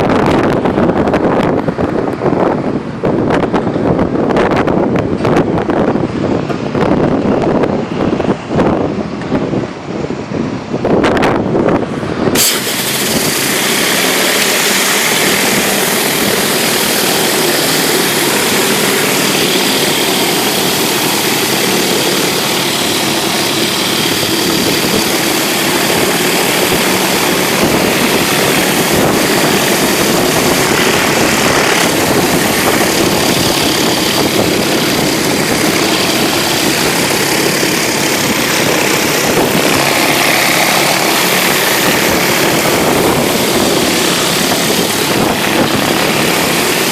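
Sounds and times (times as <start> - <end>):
pressure washer engine running: 11.8 - 46.9.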